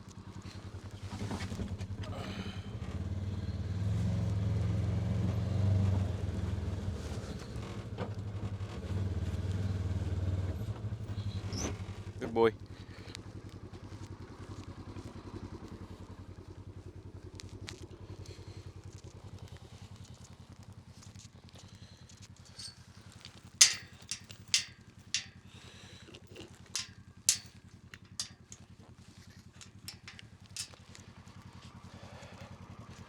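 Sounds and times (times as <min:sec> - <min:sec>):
engine idling: 0:00.0 - 0:33.0
sharp crunching clicks: 0:23.2 - 0:31.1.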